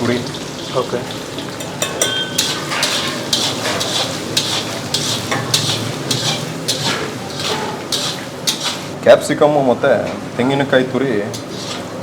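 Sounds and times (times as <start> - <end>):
vegetables sizzling in oil: 0.0 - 9.4, 11.0 - 12.0
utensil scraping pan: 2.0 - 9.0, 11.3 - 12.0.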